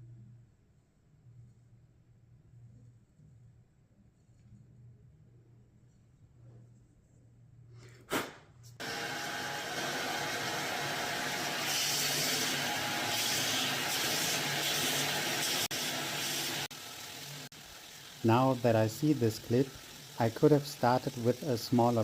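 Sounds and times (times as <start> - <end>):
power tool running: 8.8 - 22.0.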